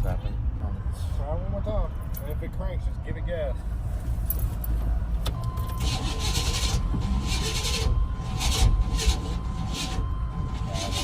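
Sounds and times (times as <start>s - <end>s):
truck engine cranking whine: 4.3s - 11.0s.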